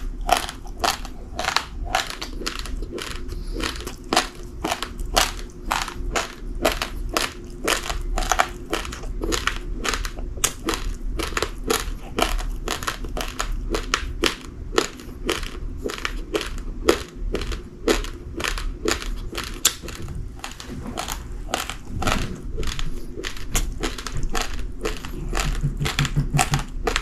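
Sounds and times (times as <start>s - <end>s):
rice grains being chewed: 0.0s - 27.0s.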